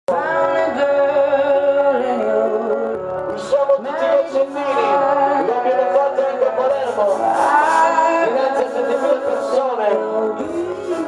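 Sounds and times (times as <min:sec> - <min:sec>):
person singing long notes: 0:00.1 - 0:11.0
loud dance music: 0:03.0 - 0:11.0.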